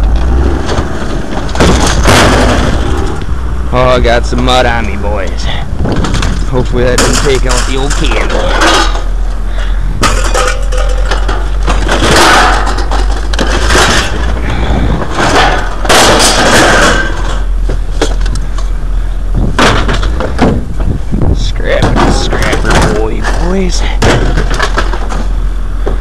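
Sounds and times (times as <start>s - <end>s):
steady low rumble: 0.0s - 26.0s
scrap clattering onto a pile: 10.0s - 14.4s, 15.0s - 18.2s.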